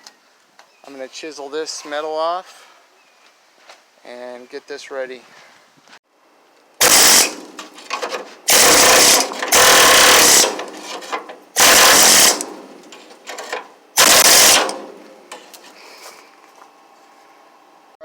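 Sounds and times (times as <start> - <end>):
air chisel hammering sheet metal: 6.8 - 12.7, 13.3 - 15.0.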